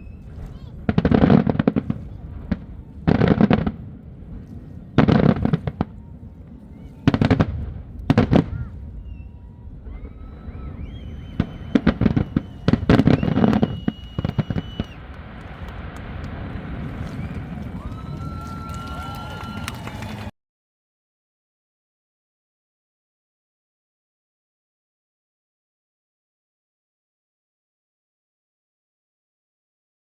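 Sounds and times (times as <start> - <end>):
fireworks bangs and crackling: 0.0 - 20.3.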